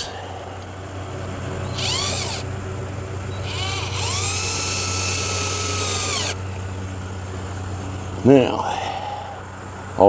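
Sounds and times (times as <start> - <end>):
power drill driving screws: 1.7 - 2.5, 3.3 - 6.4.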